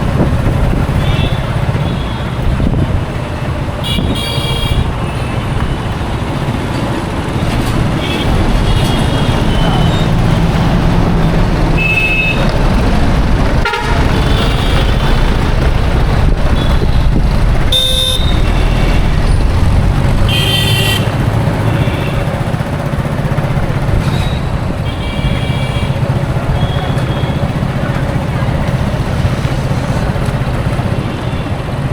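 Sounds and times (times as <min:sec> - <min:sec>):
road traffic engines rumbling: 0:00.0 - 0:31.9
car horn honks: 0:00.9 - 0:02.4, 0:03.8 - 0:05.5, 0:13.6 - 0:15.3, 0:17.7 - 0:19.1, 0:20.2 - 0:22.3, 0:24.8 - 0:27.6.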